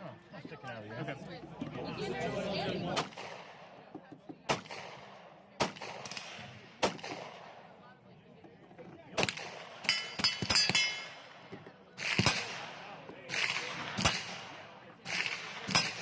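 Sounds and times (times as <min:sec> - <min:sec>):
gunshots: 0:03.0 - 0:03.8, 0:04.5 - 0:07.7, 0:09.2 - 0:16.0.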